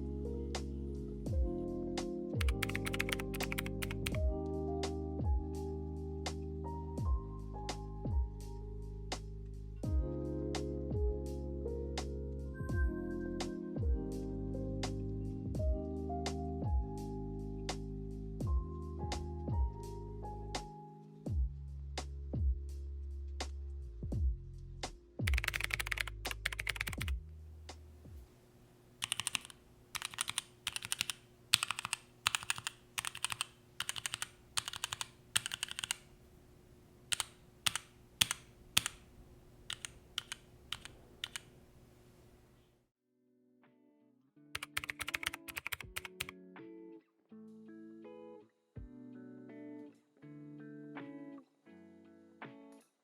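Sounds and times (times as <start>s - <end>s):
faint music: 0.0s - 31.0s
mechanical keypad clicking: 2.4s - 4.2s, 25.3s - 27.1s, 29.0s - 36.1s, 37.1s - 39.1s, 39.7s - 41.5s, 44.6s - 46.3s.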